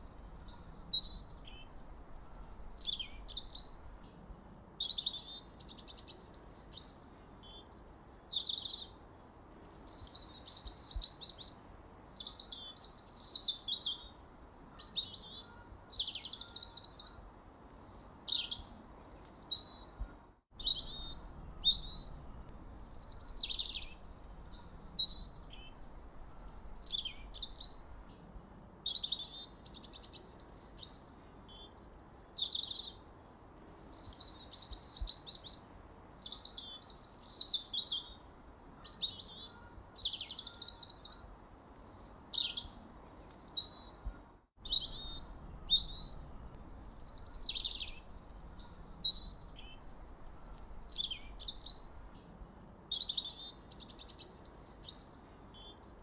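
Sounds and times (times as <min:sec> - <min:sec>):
faint steady hiss: 0:00.0 - 0:40.5, 0:41.1 - 0:56.0
bird chirping and whistling: 0:44.6 - 0:46.2, 0:46.9 - 0:51.8.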